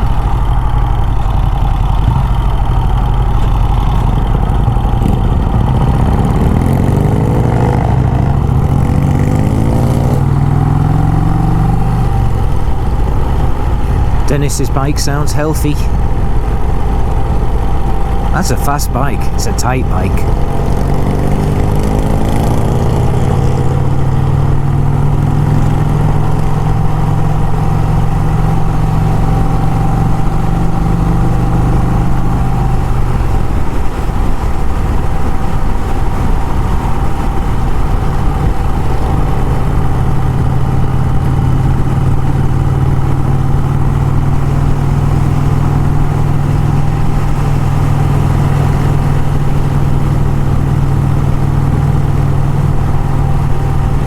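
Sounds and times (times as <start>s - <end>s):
motorcycle engine running: 0.0s - 19.4s, 20.1s - 54.0s
wind noise: 20.2s - 54.0s.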